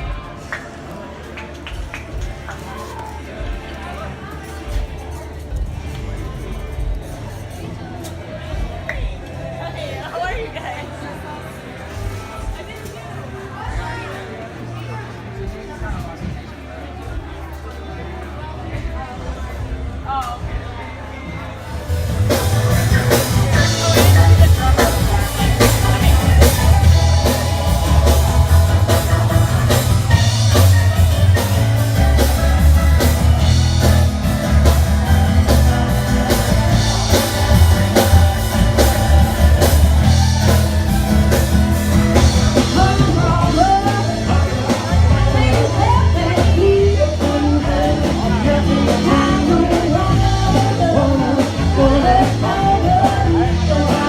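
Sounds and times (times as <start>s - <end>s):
rock band playing live: 19.6s - 54.0s
person singing: 22.4s - 34.3s, 41.8s - 54.0s.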